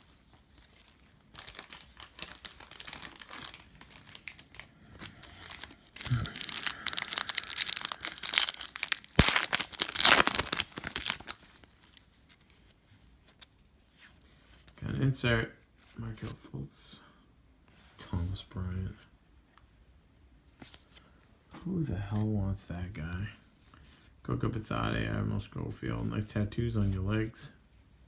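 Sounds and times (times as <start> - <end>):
foil wrapper tearing and crinkling: 1.3 - 12.2.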